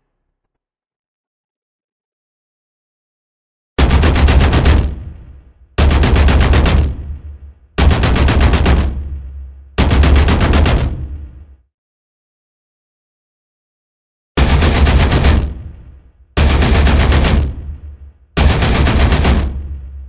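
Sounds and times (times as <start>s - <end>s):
automatic gunfire bursts: 3.8s - 4.9s, 5.8s - 6.9s, 7.8s - 9.1s, 9.8s - 10.9s, 14.4s - 15.5s, 16.4s - 17.5s, 18.4s - 19.6s.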